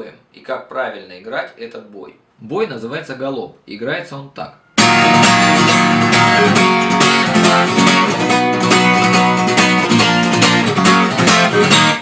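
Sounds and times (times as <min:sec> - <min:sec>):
acoustic guitar strumming chords: 0:04.7 - 0:12.0.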